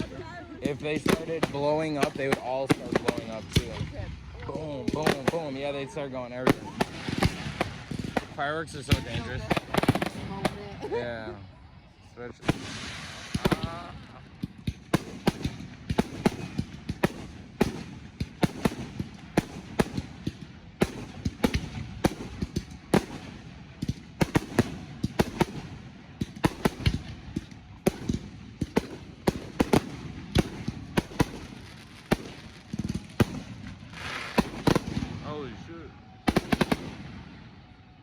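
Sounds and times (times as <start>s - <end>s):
fireworks bangs and crackles: 0.0s - 38.0s
low rumble of bursting shells: 6.4s - 10.7s, 12.4s - 35.5s.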